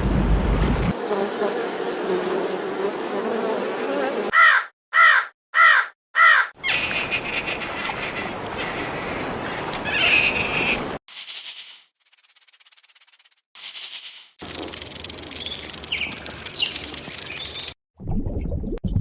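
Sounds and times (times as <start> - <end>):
outdoor background noise: 0.0 - 4.3
bird calling harshly: 4.3 - 8.2.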